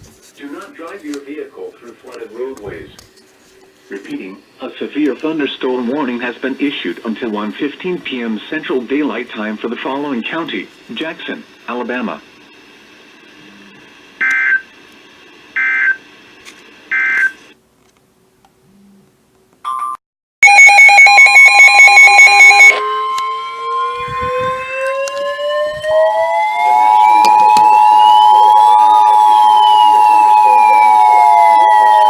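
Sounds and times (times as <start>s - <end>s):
steady warning alarm tone: 13.5s - 14.7s, 15.6s - 16.0s, 16.9s - 17.4s, 20.4s - 32.0s
warning siren winding: 14.2s - 14.6s, 20.4s - 32.0s
two-tone attention signal: 19.7s - 23.1s
pulsing receiver beeps: 19.8s - 23.1s
data bursts: 20.4s - 22.8s.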